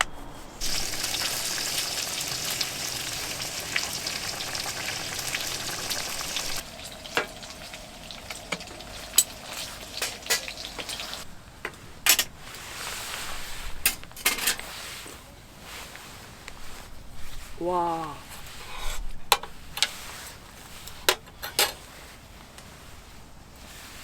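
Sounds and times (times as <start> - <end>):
food sizzling in a hot pan: 0.6 - 11.3
utensil clinking against pan: 8.4 - 11.1.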